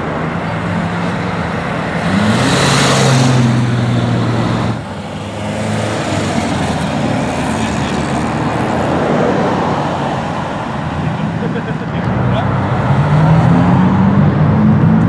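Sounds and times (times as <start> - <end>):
car engines driving off: 0.0 - 15.0.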